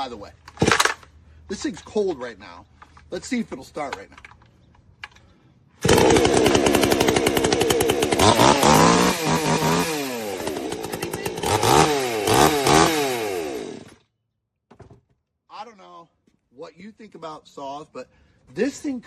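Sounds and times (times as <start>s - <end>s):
chainsaw starting and revving: 5.8s - 14.0s.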